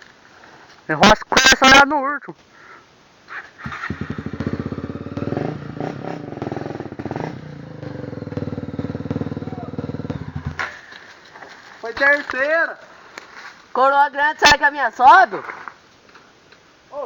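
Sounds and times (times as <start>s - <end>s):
motorcycle engine at hard throttle: 3.6s - 10.9s.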